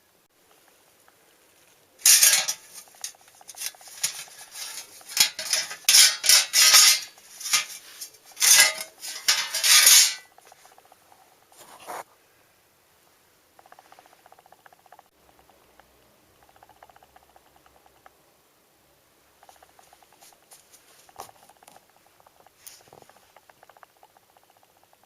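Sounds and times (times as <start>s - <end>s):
metal objects clattering: 2.0s - 10.7s.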